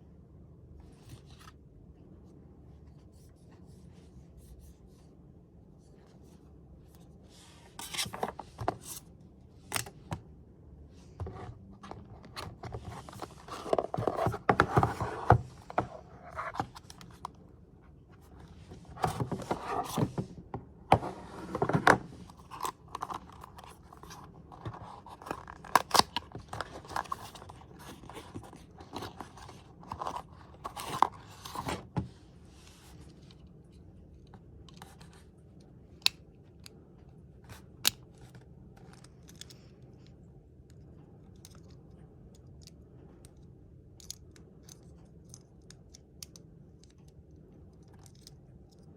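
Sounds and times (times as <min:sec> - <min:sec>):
cardboard and plastic rustling: 0:11.1 - 0:17.2, 0:18.1 - 0:33.2.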